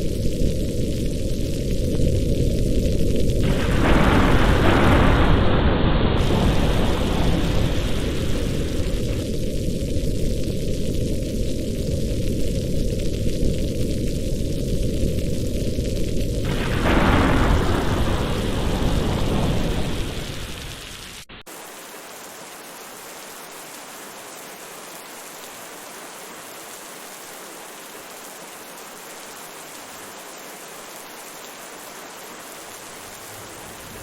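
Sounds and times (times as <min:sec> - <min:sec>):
steady forest rain: 0:00.0 - 0:34.0
thunder: 0:01.8 - 0:11.0, 0:16.4 - 0:21.2, 0:33.2 - 0:34.0.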